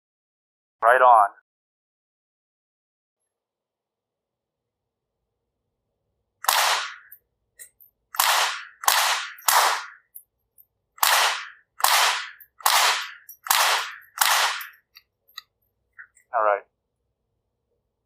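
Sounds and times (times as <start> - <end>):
rifle shots cracking: 6.4 - 7.1, 8.2 - 10.0, 11.0 - 14.8.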